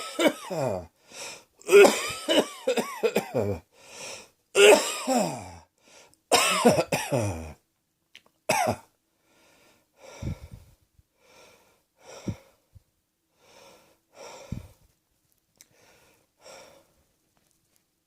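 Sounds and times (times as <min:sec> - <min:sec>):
heavy throaty breaths: 0:00.0 - 0:01.6, 0:03.7 - 0:04.4, 0:05.1 - 0:06.2, 0:09.2 - 0:14.9, 0:15.7 - 0:17.0
person breathing audibly: 0:01.0 - 0:01.5, 0:03.7 - 0:04.4, 0:05.8 - 0:06.2, 0:09.2 - 0:12.8, 0:13.4 - 0:14.9, 0:15.6 - 0:17.0.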